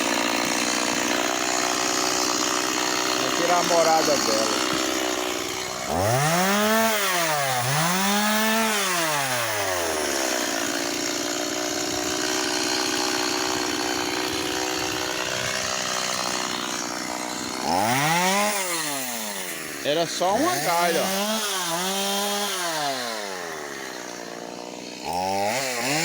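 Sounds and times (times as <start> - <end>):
chainsaw revving: 0.0 - 26.0.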